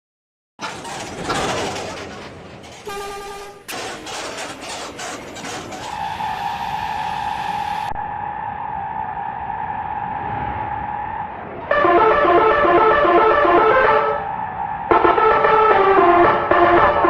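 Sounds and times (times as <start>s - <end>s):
bus engine: 0.6s - 17.0s
short horn blast: 2.8s - 3.8s.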